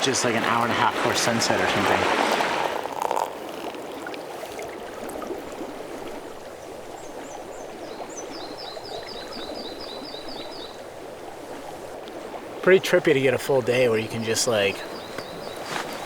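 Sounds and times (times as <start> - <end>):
river water running: 0.0 - 16.0
bird chirping: 14.0 - 16.0.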